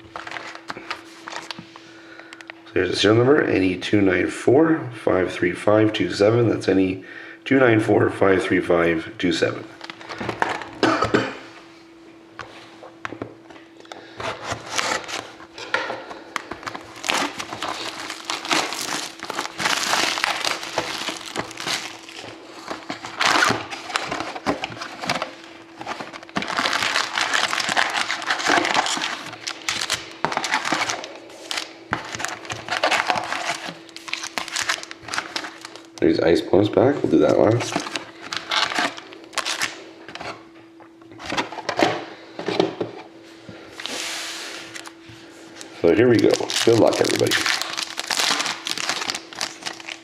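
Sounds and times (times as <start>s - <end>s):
faint steady hum: 0.0s - 50.0s
plastic shrink wrap tearing: 16.4s - 36.0s, 37.4s - 39.8s, 45.9s - 50.0s.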